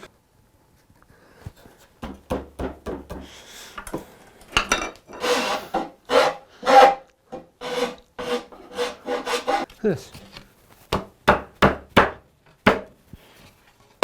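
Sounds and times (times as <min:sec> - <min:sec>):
hand tool strokes on wood: 0:05.2 - 0:07.0, 0:07.6 - 0:09.7.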